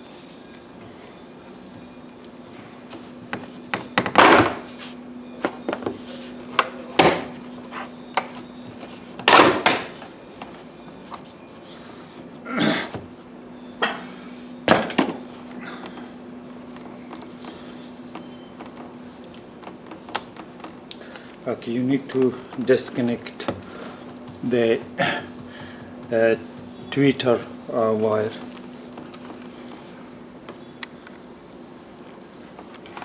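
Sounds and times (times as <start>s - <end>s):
steady low hum: 0.0s - 32.9s
tools knocking on car trim: 23.5s - 27.1s.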